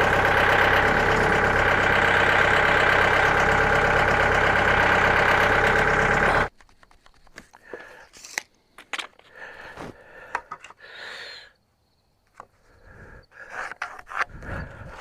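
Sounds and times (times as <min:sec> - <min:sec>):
gasoline engine running loudly: 0:00.0 - 0:06.5.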